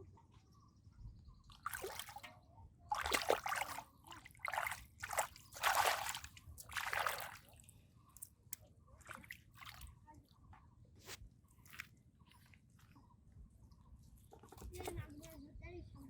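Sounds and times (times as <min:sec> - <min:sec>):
hands splashing in muddy water: 0:01.5 - 0:02.3, 0:02.9 - 0:07.6, 0:09.0 - 0:10.0.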